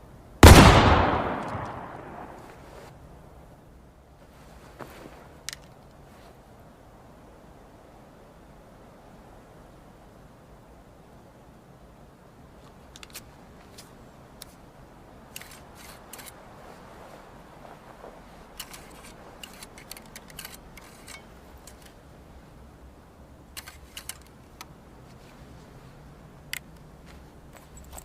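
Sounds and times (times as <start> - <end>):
rifle metallic clicks and rattles: 5.4 - 6.0, 12.9 - 14.6, 15.3 - 16.4, 18.5 - 22.0, 23.5 - 24.8.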